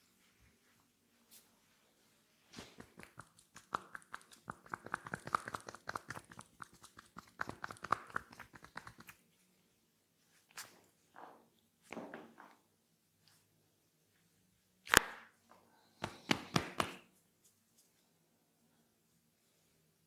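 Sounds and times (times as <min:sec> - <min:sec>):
hands tapping on head: 0:02.6 - 0:09.2, 0:16.0 - 0:17.1.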